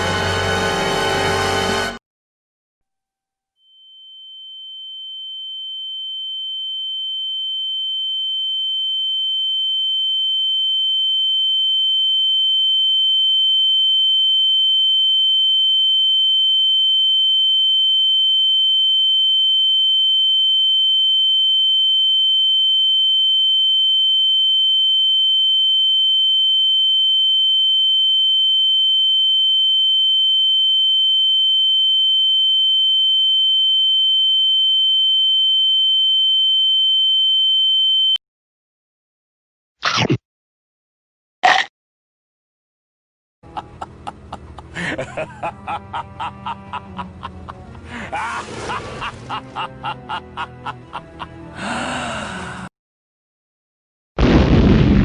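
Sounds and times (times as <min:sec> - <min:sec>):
high-pitched sine tone: 0:03.6 - 0:38.2.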